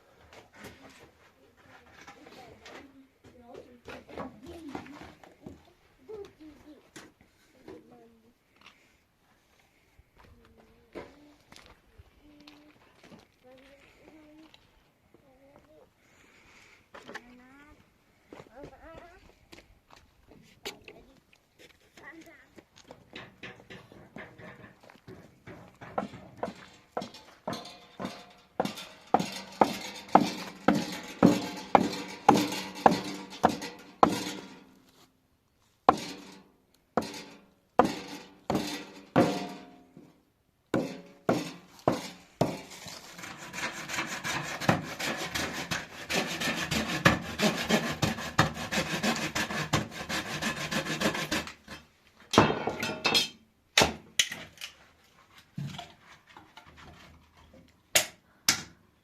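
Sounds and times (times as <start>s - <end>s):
scraping on wood: 22.8s - 35.1s, 35.9s - 39.8s, 40.8s - 52.0s, 55.0s - 57.7s
hammer knocking on wood: 25.1s - 34.4s, 40.8s - 42.7s.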